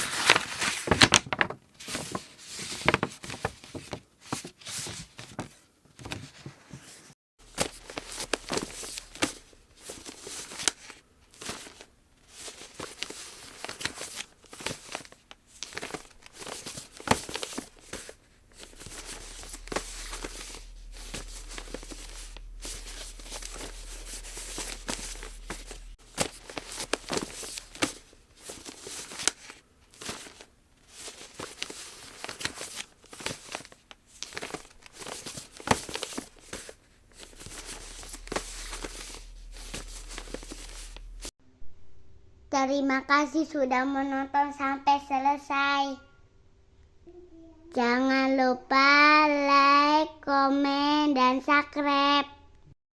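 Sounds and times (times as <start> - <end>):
paper crinkling and rustling: 0.0 - 41.3.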